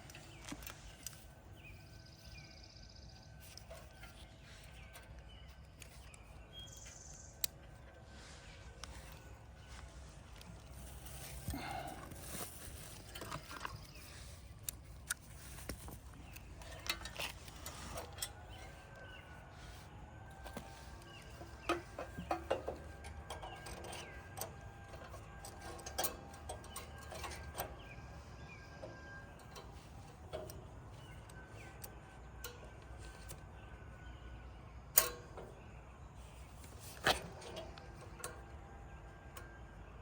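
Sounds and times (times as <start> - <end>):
faint steady hum: 0.0 - 40.0
hand tools clicking and knocking: 20.4 - 33.4.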